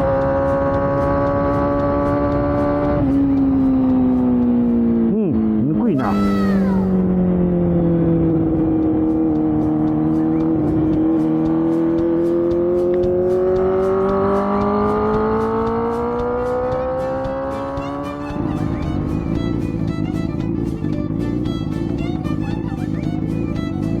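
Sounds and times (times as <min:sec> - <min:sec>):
minibike engine running: 0:06.9 - 0:24.0.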